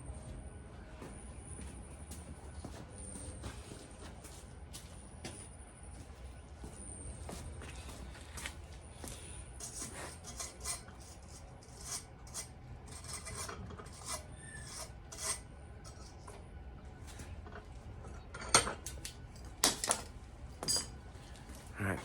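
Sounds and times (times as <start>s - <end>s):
hand tool rasping on steel: 9.6s - 16.2s.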